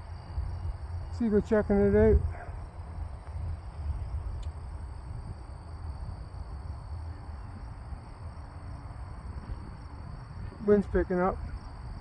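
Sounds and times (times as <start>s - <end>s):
insects chirring: 0.0s - 12.0s
wind buffeting microphone: 0.0s - 12.0s.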